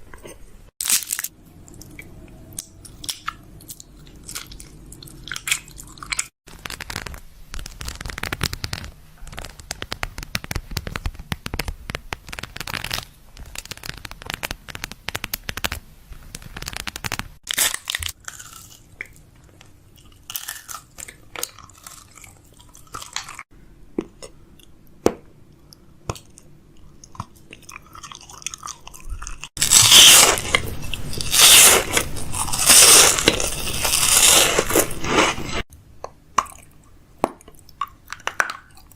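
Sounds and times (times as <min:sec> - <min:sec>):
crunchy snack being chewed: 0:17.5 - 0:23.4, 0:26.1 - 0:35.6.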